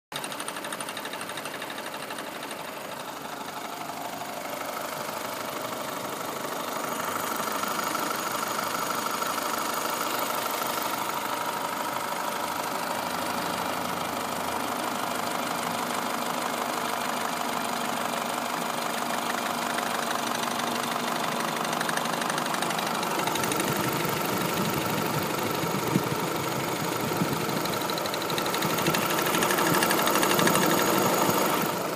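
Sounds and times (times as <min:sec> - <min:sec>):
car engine running: 0:00.2 - 0:31.9.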